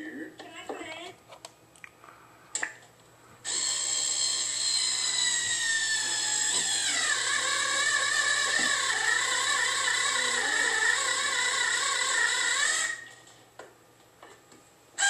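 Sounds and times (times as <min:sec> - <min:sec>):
cordless drill motor whine: 0:03.4 - 0:13.2.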